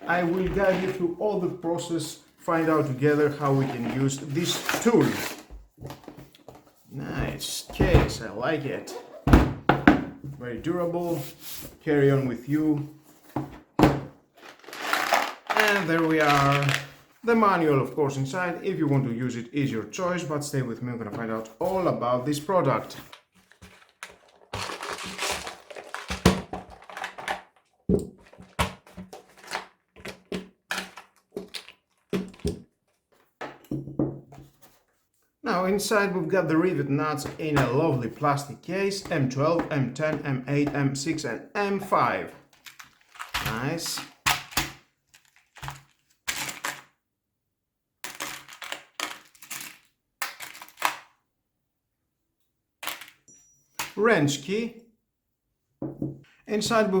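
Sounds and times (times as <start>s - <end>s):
wrapping crinkling: 14.3s - 17.2s, 22.9s - 32.4s, 42.5s - 46.9s, 48.0s - 51.0s
metal parts clicking and rattling: 14.6s - 16.7s.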